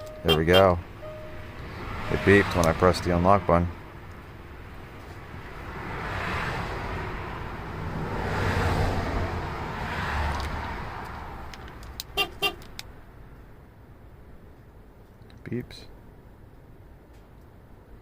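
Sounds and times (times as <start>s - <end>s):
short pitched car beeps: 0.0s - 2.4s.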